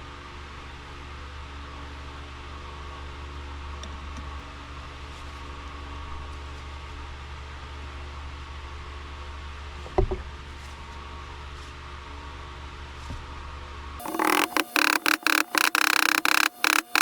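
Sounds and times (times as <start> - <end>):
machine hum and hiss: 14.0 - 17.0.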